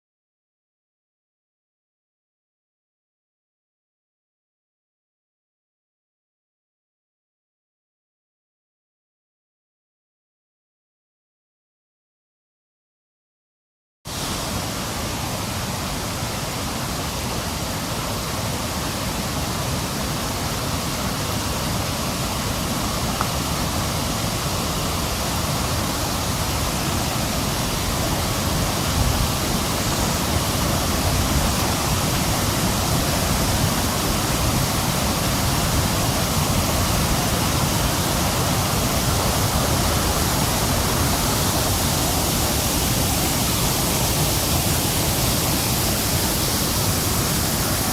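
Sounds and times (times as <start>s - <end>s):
waterfall rushing: 14.1s - 47.9s.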